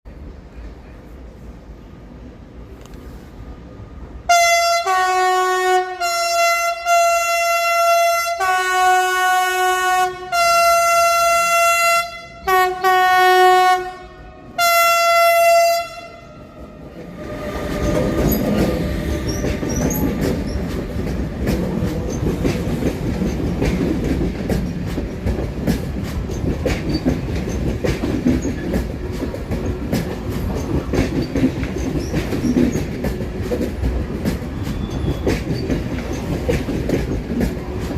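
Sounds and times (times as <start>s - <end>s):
train rumbling: 0.1s - 37.9s
train horn blasts: 4.3s - 19.5s
wheels clicking over rail joints: 16.8s - 37.9s.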